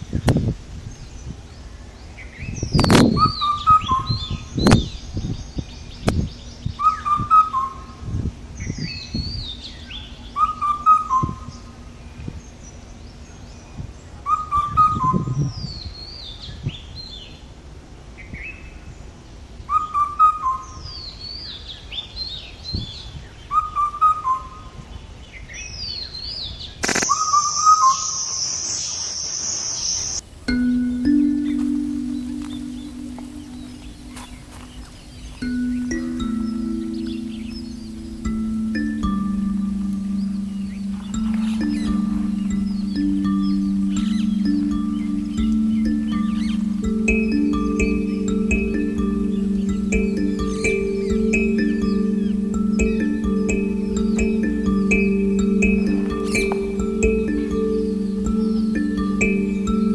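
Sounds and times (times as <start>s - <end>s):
steady high hiss: 29.6s - 59.9s
birds chirping: 29.8s - 59.9s.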